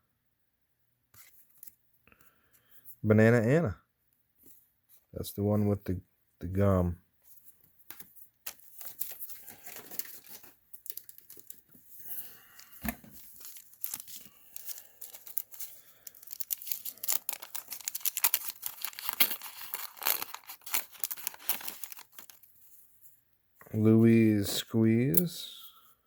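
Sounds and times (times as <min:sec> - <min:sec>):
wax paper wrapper tearing and crinkling: 0:08.4 - 0:11.8, 0:12.4 - 0:22.5.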